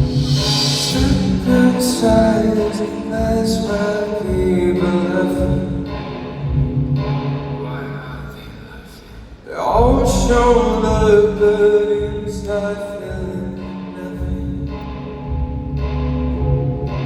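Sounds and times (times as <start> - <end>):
cymbal and drum hits: 0.0 - 4.8
band accompaniment: 0.0 - 7.4
man singing: 0.3 - 6.0, 7.6 - 14.9.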